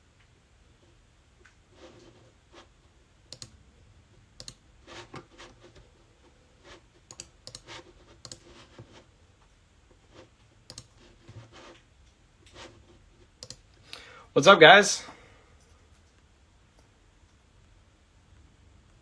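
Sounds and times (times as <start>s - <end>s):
sharp clicks: 10.7s - 10.9s, 13.4s - 14.0s.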